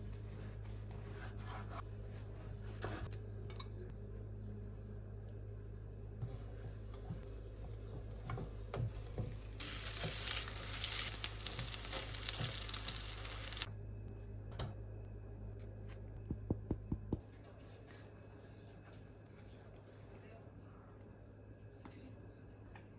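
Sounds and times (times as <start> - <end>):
toast sizzling in a pan: 6.2 - 13.7.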